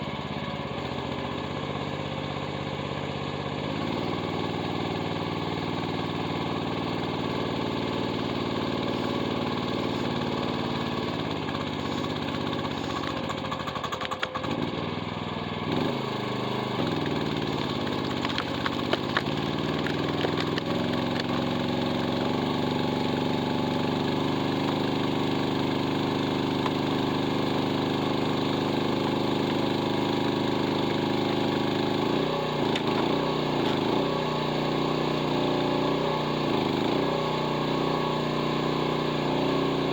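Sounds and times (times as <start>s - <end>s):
excavator engine running: 0.0s - 38.5s
sharp cracks and clicks: 12.9s - 14.5s, 17.5s - 21.4s.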